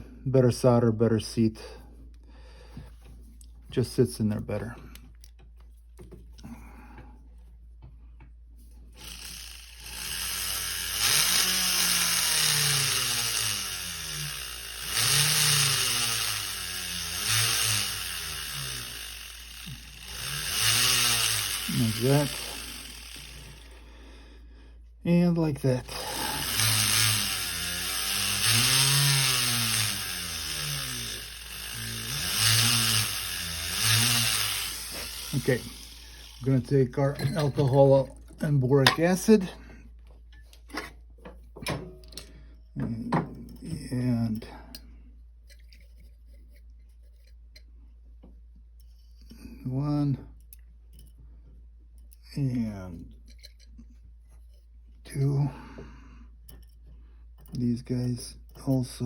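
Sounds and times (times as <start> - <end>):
rotary tool running: 8.9 - 23.9, 25.4 - 37.8.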